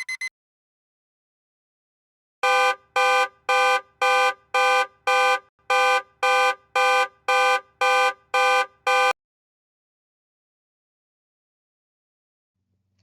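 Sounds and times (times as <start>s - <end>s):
car horn short blasts: 2.4s - 9.2s.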